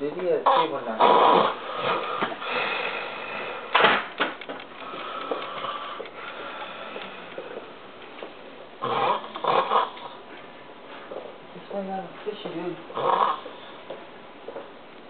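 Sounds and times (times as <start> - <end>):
person snoring: 0.5 - 3.7, 8.8 - 10.1.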